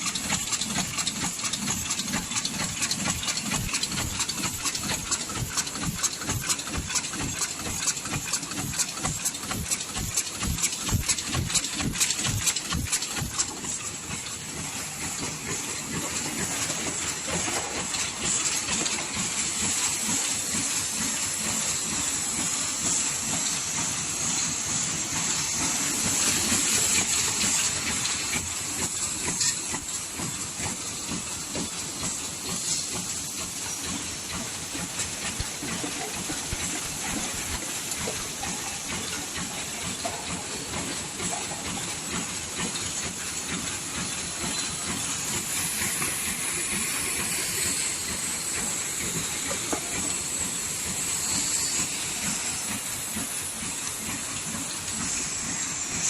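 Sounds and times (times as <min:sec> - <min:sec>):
rapid mechanical clatter: 0:00.0 - 0:56.0.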